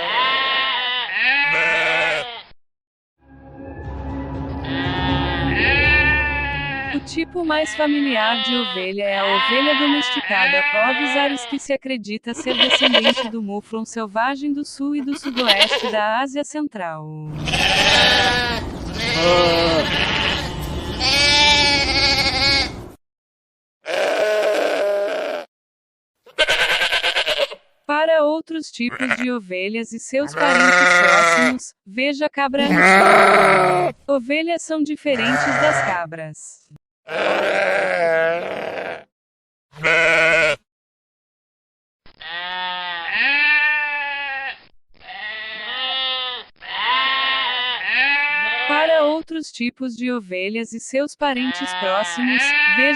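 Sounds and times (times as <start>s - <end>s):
sheep bleating: 0.0s - 2.6s, 4.6s - 11.7s, 12.4s - 13.4s, 15.0s - 16.0s, 17.3s - 22.9s, 23.8s - 25.5s, 26.3s - 27.6s, 28.9s - 29.3s, 30.2s - 31.6s, 32.6s - 34.0s, 35.1s - 36.1s, 37.1s - 39.1s, 39.8s - 40.6s, 42.2s - 48.8s, 51.4s - 52.9s.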